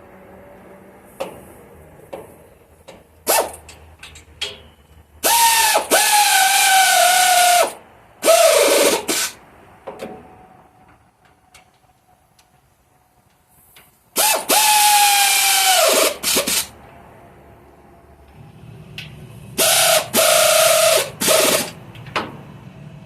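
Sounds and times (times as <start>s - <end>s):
air ratchet whining: 3.2s - 3.8s, 5.2s - 9.4s, 14.2s - 16.7s, 19.6s - 21.8s.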